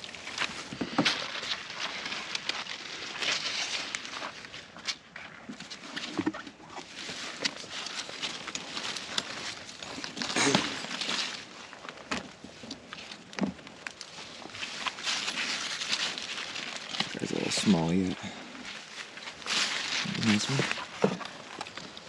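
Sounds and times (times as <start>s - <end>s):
leaves and stems rustling: 0.0s - 22.0s
stems snapping: 12.9s - 17.3s.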